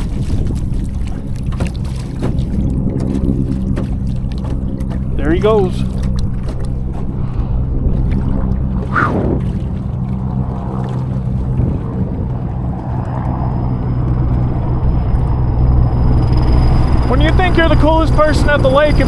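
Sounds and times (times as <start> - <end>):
rushing splash-like noise: 0.0 - 7.0
low engine drone: 0.0 - 19.0.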